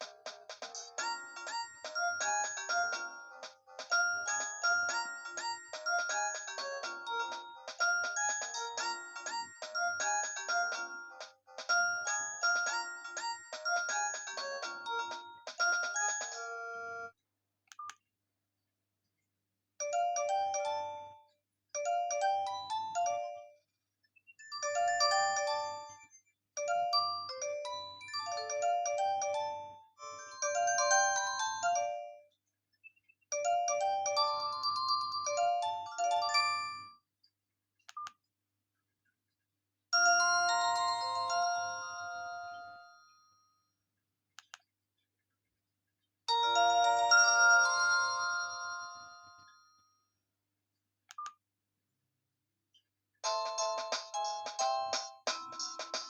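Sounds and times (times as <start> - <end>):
electronic ringtone melody: 0.7 - 17.1, 24.4 - 32.3, 33.3 - 37.0, 40.0 - 43.1, 46.3 - 49.8, 53.2 - 56.0.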